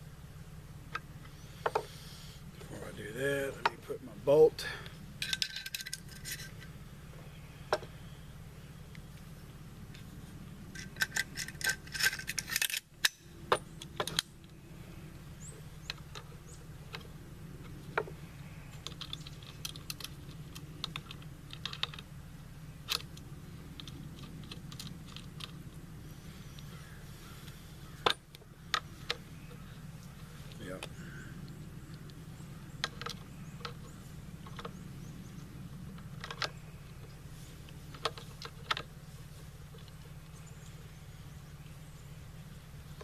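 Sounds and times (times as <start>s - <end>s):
low steady hum: 0.0s - 43.0s
metal rifle parts clicking: 5.2s - 6.7s, 10.7s - 14.6s, 18.7s - 22.1s, 22.8s - 25.6s, 32.8s - 34.8s, 35.9s - 39.0s.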